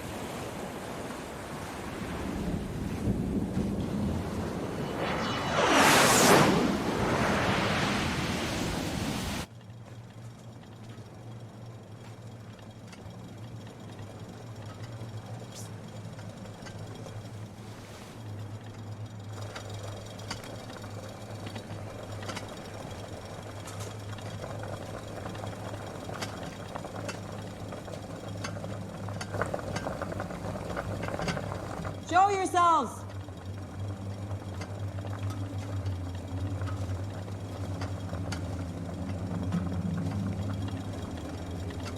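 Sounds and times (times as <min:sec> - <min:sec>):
steady low hum: 0:00.0 - 0:32.1, 0:32.9 - 0:41.9
loud rushing roar: 0:01.9 - 0:09.5
faint clicks and ticks: 0:09.5 - 0:17.5, 0:18.3 - 0:32.4, 0:33.0 - 0:41.9.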